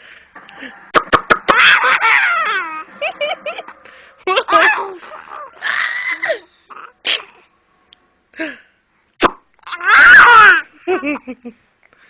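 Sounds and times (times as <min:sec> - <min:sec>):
silly vocal noises: 0:03.6 - 0:07.5.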